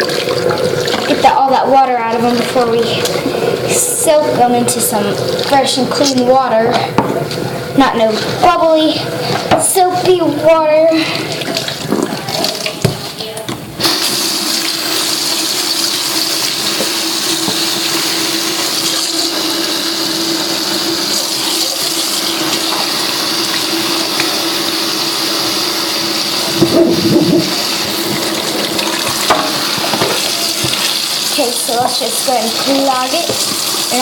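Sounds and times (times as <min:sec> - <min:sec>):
tap water running into sink: 0:00.0 - 0:34.0
tap humming: 0:06.7 - 0:07.4, 0:16.8 - 0:17.7, 0:26.5 - 0:31.0, 0:31.7 - 0:32.0, 0:33.2 - 0:33.7
water splashing: 0:26.4 - 0:34.0.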